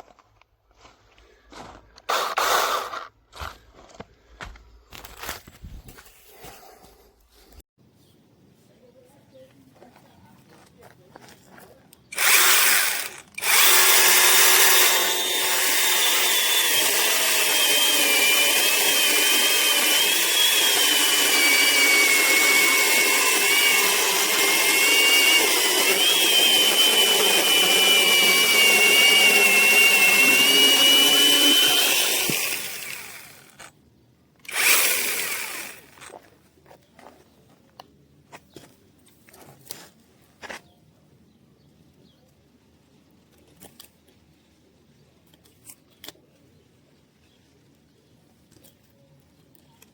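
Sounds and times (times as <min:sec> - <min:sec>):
mini chainsaw motor whine: 0:12.1 - 0:33.6, 0:34.4 - 0:36.1.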